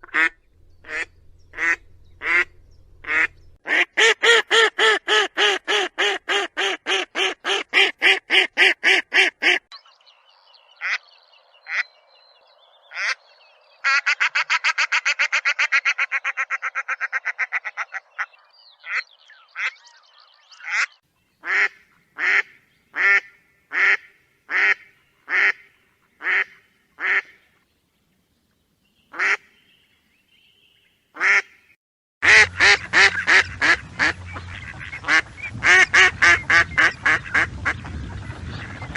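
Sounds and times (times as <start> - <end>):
ducks quacking: 0.0 - 9.7, 13.8 - 19.8, 20.6 - 27.5, 29.1 - 29.5, 31.2 - 31.6, 32.2 - 38.9.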